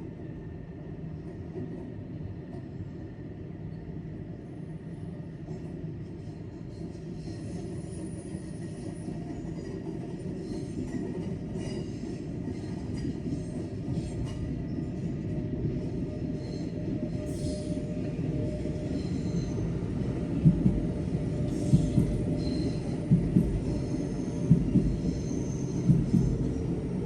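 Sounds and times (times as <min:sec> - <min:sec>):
train rumbling: 0:00.0 - 0:27.0
wheel squeals on rails: 0:16.4 - 0:19.7, 0:21.6 - 0:23.0.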